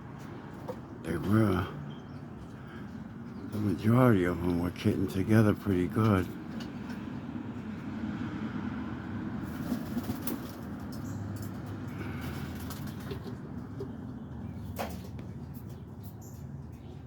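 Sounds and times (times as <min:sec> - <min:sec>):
pigeon wing flaps: 0:09.4 - 0:10.9, 0:12.3 - 0:13.3
pigeons cooing: 0:11.7 - 0:15.8.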